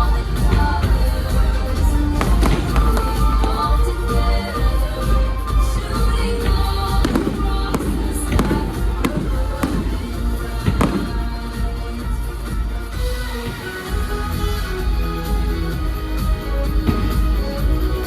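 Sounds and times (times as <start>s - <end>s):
show music with heavy bass: 0.0s - 18.0s
fireworks bangs: 6.9s - 11.4s.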